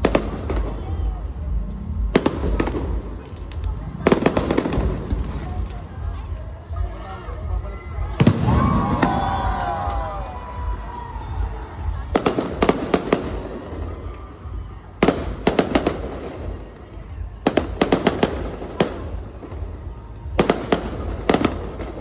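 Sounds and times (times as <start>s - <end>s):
low rumble: 0.0s - 6.8s
fireworks cracking: 0.0s - 22.0s.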